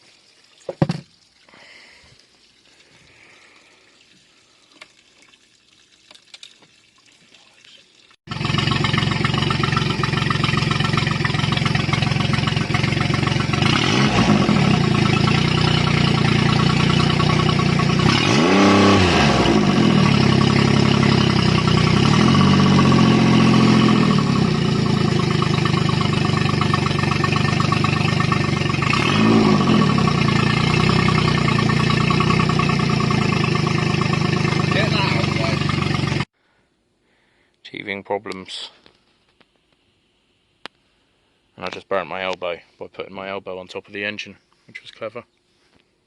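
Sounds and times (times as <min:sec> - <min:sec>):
outboard motor revving: 0:08.3 - 0:36.3.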